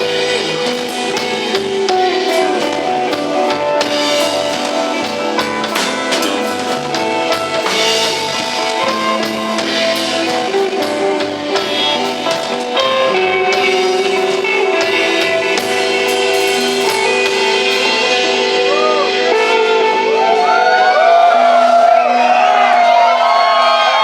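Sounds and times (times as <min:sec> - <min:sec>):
bass guitar: 0:00.0 - 0:24.0
drum kit: 0:00.0 - 0:24.0
electric guitar: 0:00.0 - 0:24.0.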